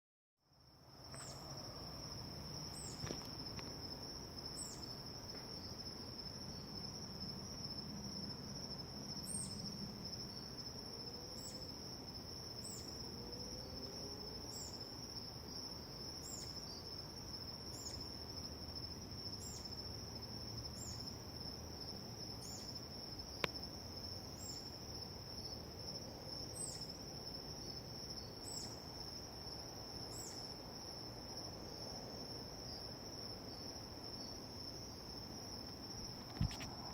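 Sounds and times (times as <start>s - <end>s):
night insects droning: 0.4s - 36.9s
faint road noise: 0.7s - 15.1s, 29.2s - 36.9s.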